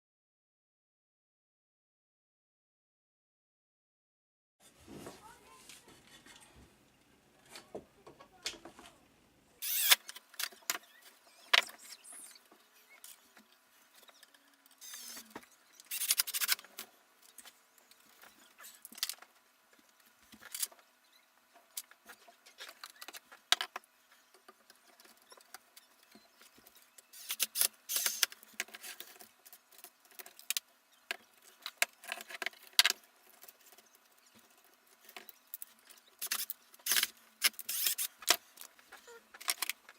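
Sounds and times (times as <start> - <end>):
small metal parts and tools clinking: 27.1 - 39.9.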